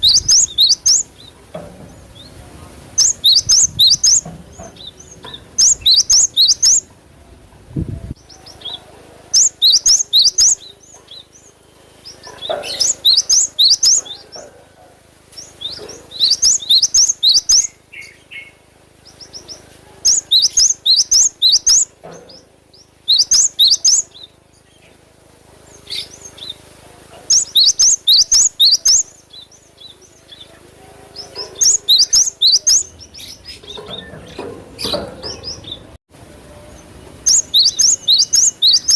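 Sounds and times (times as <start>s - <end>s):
bird singing high sharp notes: 0.0s - 1.1s, 3.0s - 4.3s, 5.6s - 6.9s, 9.4s - 10.7s, 12.7s - 14.1s, 16.1s - 18.6s, 20.1s - 21.9s, 23.1s - 24.2s, 27.3s - 29.2s, 31.6s - 32.9s, 37.2s - 38.9s.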